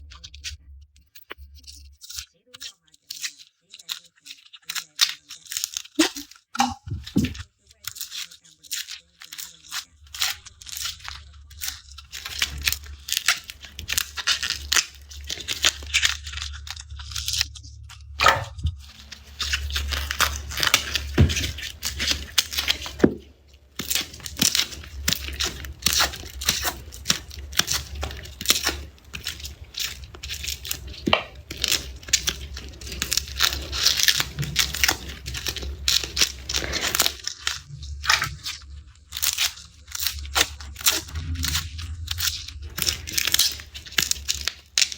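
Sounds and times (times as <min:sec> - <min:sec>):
garlic skins crackling and tearing: 0:02.1 - 0:44.9
steady low hum: 0:09.9 - 0:37.0.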